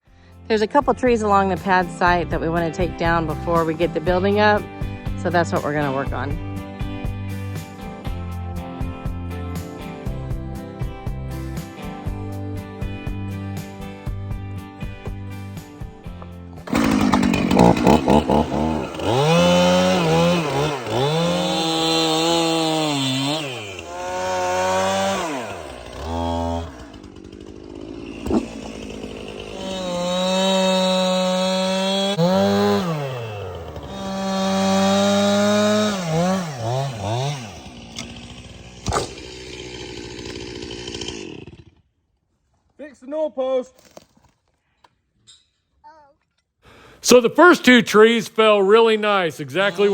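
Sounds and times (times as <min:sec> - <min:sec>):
background music: 0:00.1 - 0:25.2, 0:29.2 - 0:33.3, 0:33.9 - 0:37.3
chainsaw revving: 0:01.2 - 0:06.5, 0:16.6 - 0:41.9, 0:49.4 - 0:49.9.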